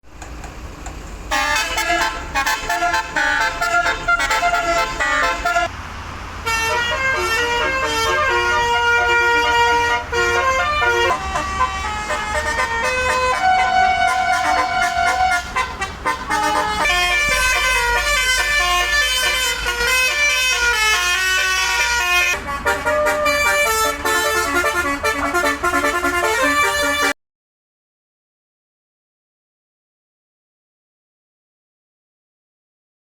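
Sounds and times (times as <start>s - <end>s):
bus engine running: 0.0s - 27.2s
bus horn playing melody: 1.3s - 5.7s, 6.4s - 27.2s.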